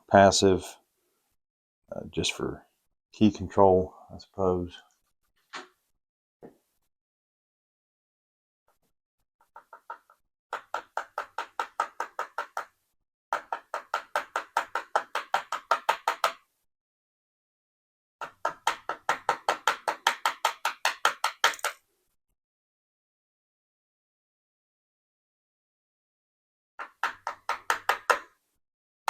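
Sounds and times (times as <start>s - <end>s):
rapid tapping on padlock: 9.4s - 12.7s, 13.3s - 16.4s, 18.2s - 21.8s, 26.8s - 28.4s.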